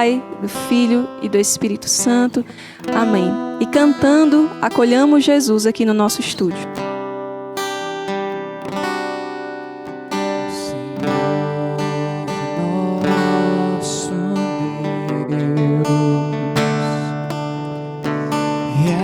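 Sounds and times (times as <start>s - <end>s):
acoustic guitar strumming chords: 0.0s - 19.0s.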